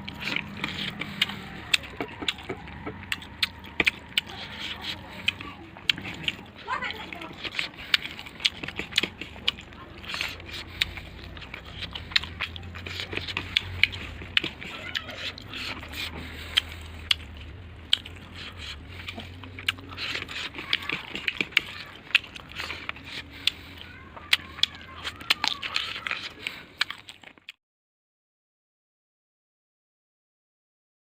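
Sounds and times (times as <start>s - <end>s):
crunching and chewing: 0.0s - 27.6s.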